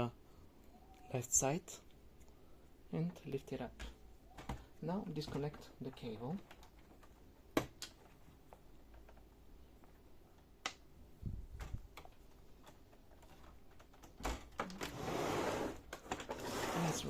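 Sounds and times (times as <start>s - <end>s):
plastic clicks: 3.8s - 10.9s.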